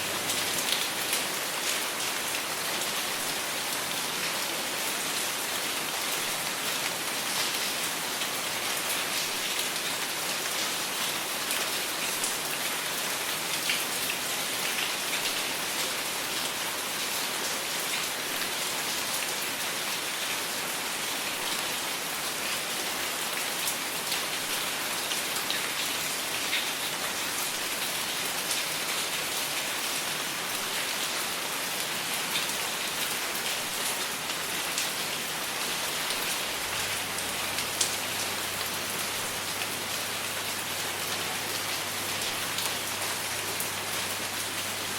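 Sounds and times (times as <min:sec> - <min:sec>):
steady rainfall: 0:00.0 - 0:44.9.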